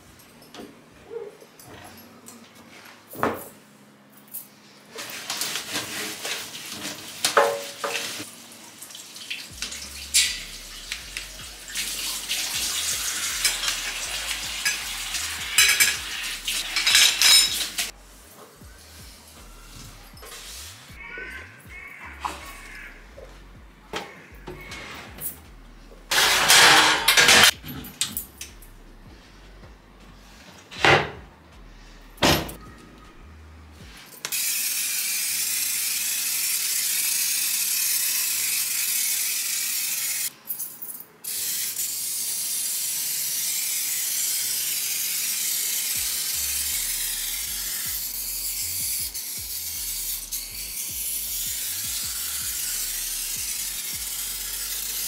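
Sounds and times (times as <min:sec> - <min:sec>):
steady hiss: 0:07.2 - 0:21.0, 0:41.3 - 0:55.0
spray bursts: 0:09.5 - 0:18.0, 0:18.6 - 0:21.0, 0:34.3 - 0:40.3, 0:41.2 - 0:55.0.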